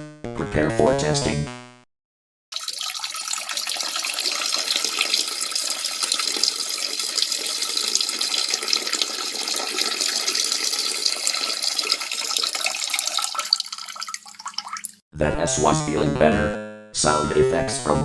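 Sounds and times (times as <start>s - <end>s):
stream of liquid splashing: 2.5s - 15.0s.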